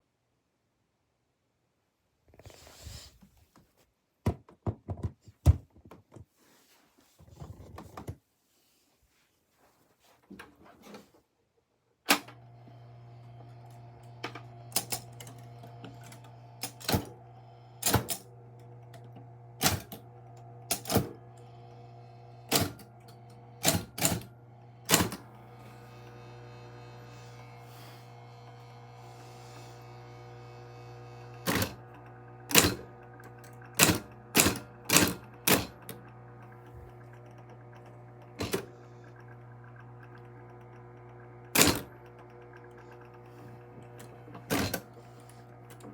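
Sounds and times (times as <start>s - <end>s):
typewriter keys striking: 33.8s - 35.8s.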